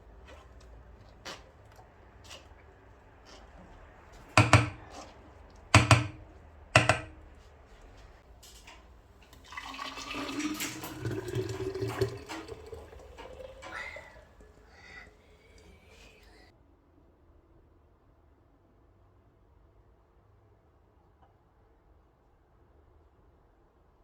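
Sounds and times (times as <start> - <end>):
sharp knocks: 4.4 - 5.0, 5.8 - 7.2.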